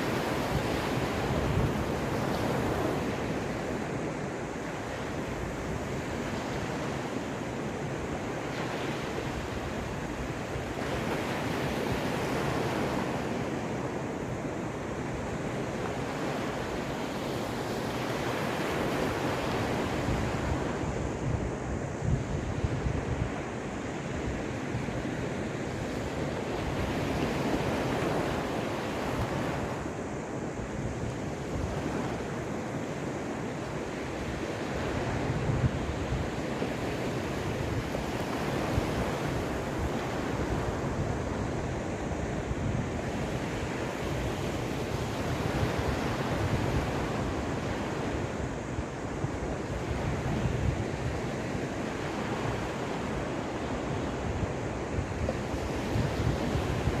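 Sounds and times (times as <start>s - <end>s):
waves washing onto shore: 0.0s - 57.0s
wind buffeting microphone: 0.0s - 57.0s.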